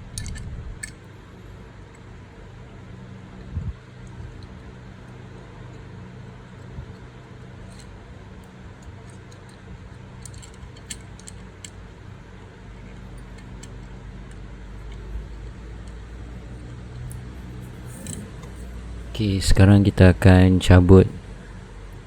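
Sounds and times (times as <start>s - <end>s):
small metallic clicks and scrapes: 0.1s - 1.1s, 4.0s - 11.8s, 12.7s - 18.8s.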